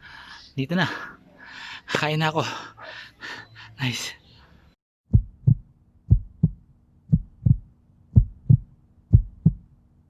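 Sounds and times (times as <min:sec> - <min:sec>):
low steady hum: 0:04.5 - 0:10.0
heartbeat thumps: 0:05.1 - 0:09.7.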